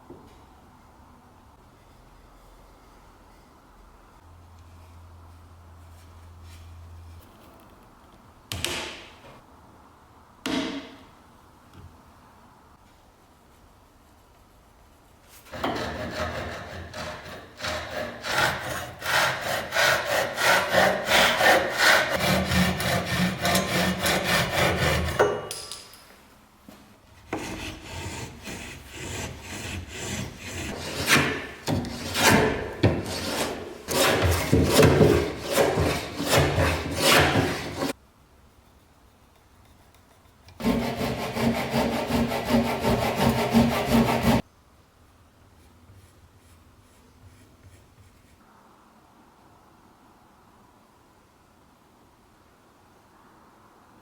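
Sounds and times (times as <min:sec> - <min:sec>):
hand tool strokes on wood: 0:14.1 - 0:25.2, 0:27.2 - 0:38.0, 0:38.6 - 0:44.4.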